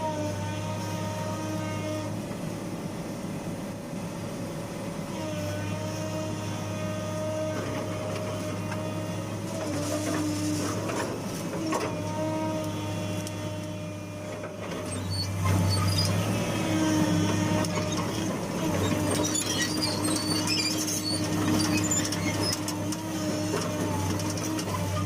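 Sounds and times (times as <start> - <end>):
excavator diesel engine running: 0.0 - 25.0
high squeaks and clicks: 18.9 - 22.8.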